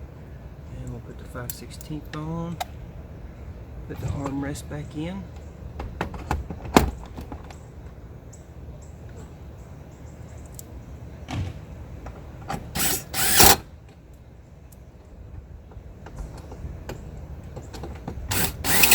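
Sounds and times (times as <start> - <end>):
sharp knocks and clicks: 5.4 - 7.6, 15.7 - 18.9
power drill bursts: 12.6 - 13.6, 18.3 - 18.9.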